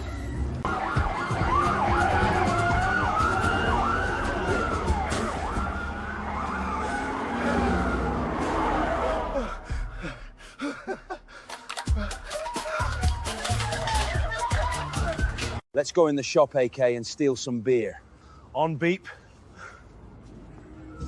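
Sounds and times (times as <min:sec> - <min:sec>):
siren wailing: 0:00.0 - 0:09.6, 0:20.5 - 0:21.0.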